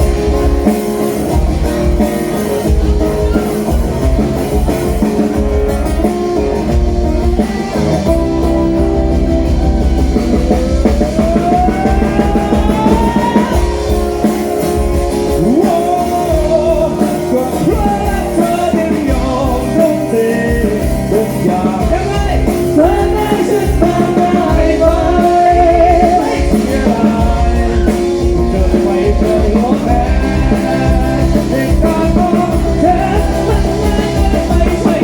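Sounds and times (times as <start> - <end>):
band music with guitars and drums: 0.0 - 35.0.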